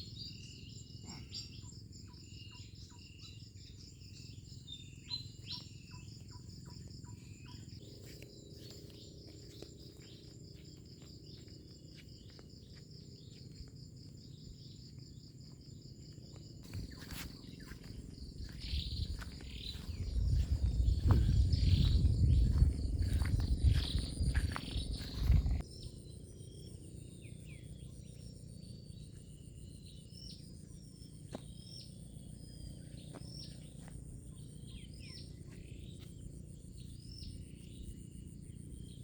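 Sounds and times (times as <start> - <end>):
insects trilling: 0.0 - 39.0
loud low rumble: 18.3 - 25.6.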